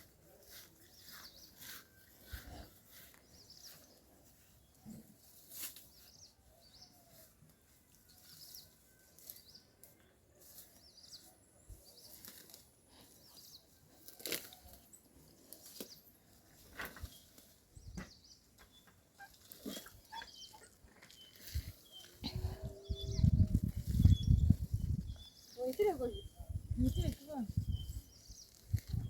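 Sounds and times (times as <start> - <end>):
faint small bird chirps: 17.0 - 29.0.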